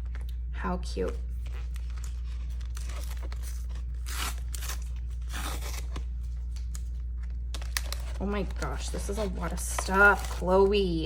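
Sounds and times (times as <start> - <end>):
steady low hum: 0.0 - 11.0
packaging rustling and tearing: 1.2 - 10.5.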